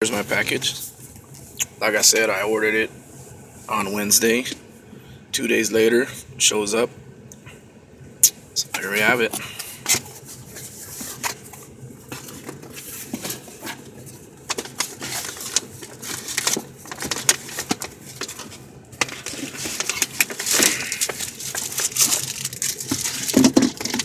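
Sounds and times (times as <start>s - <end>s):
clicks and handling noises: 9.8s - 24.0s
packaging rustling and crinkling: 9.9s - 24.0s.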